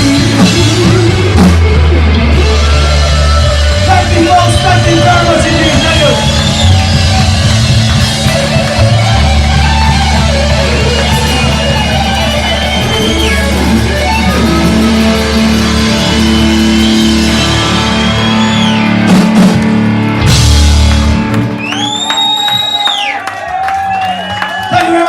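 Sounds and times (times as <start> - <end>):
live rock band playing: 0.0 - 25.0
audience reacting: 2.3 - 25.0
loud high whistle: 5.3 - 7.5, 10.8 - 14.1, 15.7 - 19.1, 21.6 - 25.0.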